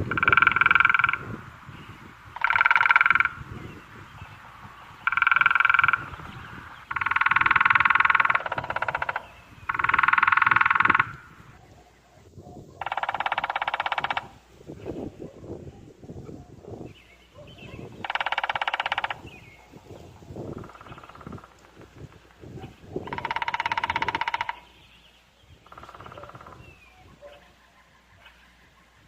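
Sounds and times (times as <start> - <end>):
woodpecker drumming on tree: 0.0 - 1.5, 2.3 - 3.6, 5.0 - 11.4, 12.7 - 14.4, 17.4 - 19.7, 20.4 - 27.4.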